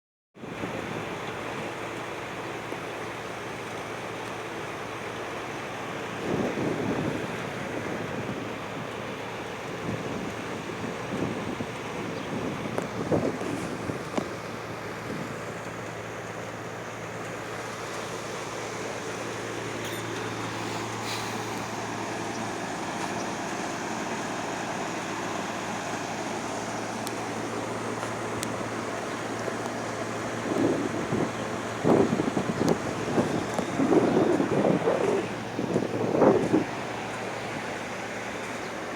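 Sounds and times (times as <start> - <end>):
air conditioning units running: 0.5 - 38.9
faint ticks: 28.0 - 28.6.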